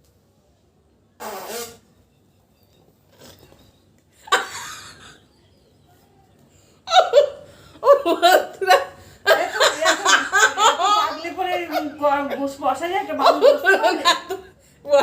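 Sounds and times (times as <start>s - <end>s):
woman laughing: 4.2s - 5.3s, 6.9s - 12.4s, 13.1s - 14.5s.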